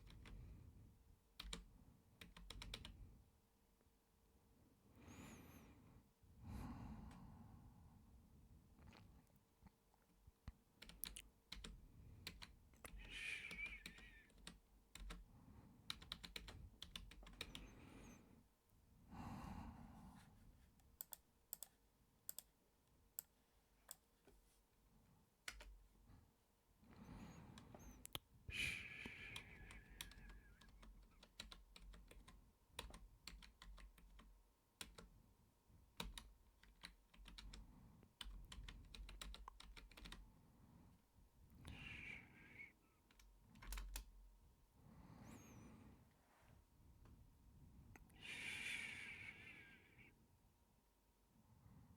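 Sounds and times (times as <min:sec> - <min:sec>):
typing on a computer keyboard: 0:00.0 - 0:00.4, 0:01.4 - 0:03.0, 0:10.8 - 0:17.7, 0:21.0 - 0:22.5, 0:25.5 - 0:25.8, 0:29.0 - 0:35.2, 0:35.9 - 0:40.2, 0:43.1 - 0:44.2.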